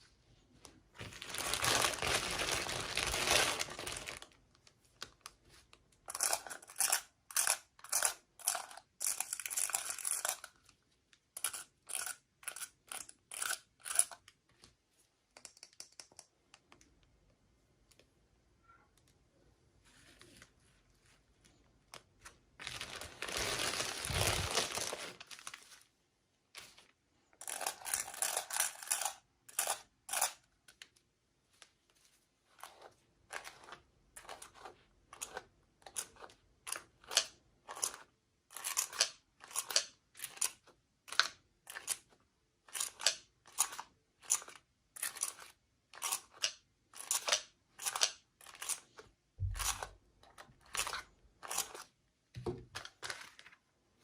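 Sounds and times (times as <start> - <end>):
packaging tearing and crinkling: 1.1 - 4.4, 22.6 - 25.6.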